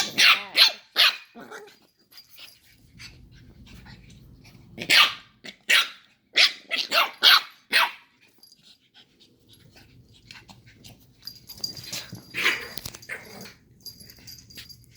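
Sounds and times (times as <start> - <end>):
puppies barking: 4.8 - 8.1
puppies scuffling: 8.2 - 14.9.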